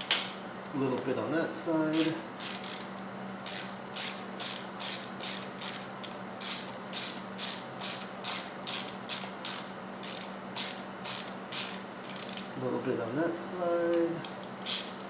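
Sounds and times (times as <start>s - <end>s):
ratchet wrench clicking: 1.9s - 12.4s, 14.2s - 15.0s.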